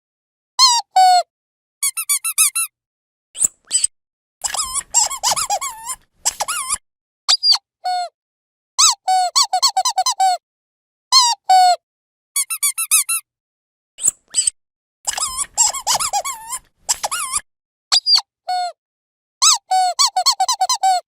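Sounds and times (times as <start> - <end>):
squeaky toy squeaking: 0.6 - 2.7, 3.4 - 8.1, 8.8 - 10.4, 11.2 - 11.8, 12.4 - 13.2, 14.0 - 14.5, 15.1 - 18.8, 19.4 - 21.0.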